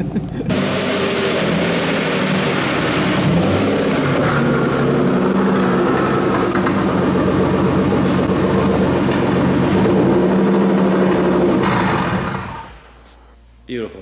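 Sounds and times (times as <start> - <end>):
car engine droning while driving: 0.0 - 13.5.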